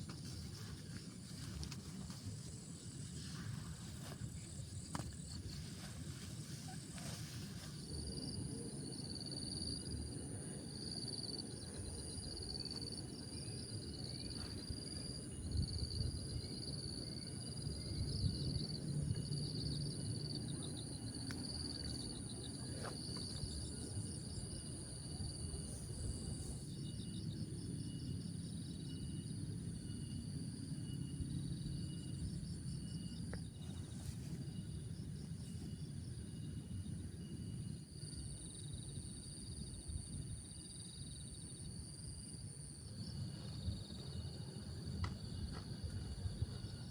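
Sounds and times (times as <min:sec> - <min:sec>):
constant low rumble: 0:00.0 - 0:46.9
insects chirping: 0:00.0 - 0:46.9.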